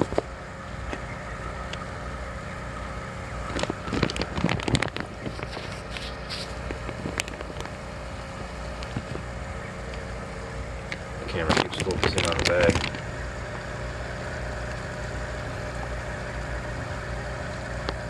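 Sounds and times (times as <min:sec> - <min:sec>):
steady low hum: 0:00.0 - 0:18.0
rustling and knocking handling noise: 0:11.4 - 0:13.0.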